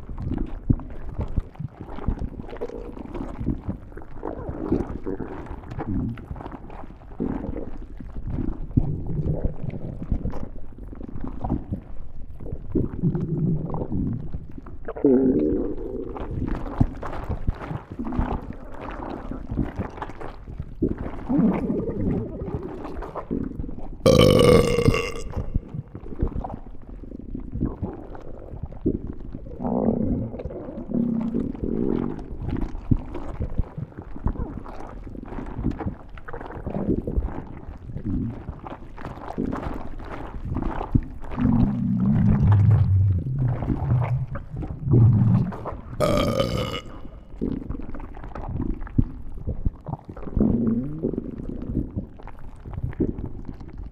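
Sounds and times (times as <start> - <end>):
stomach growling and gurgling: 0.0 - 53.9
high-pitched squealing stomach growl: 24.1 - 25.9, 41.4 - 47.3.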